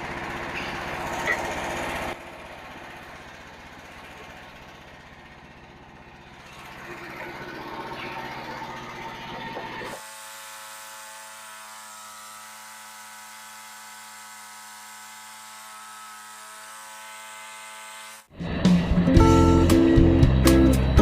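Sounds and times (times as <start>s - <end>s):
steady machine hum: 0.0s - 21.0s
guitar music: 18.4s - 21.0s.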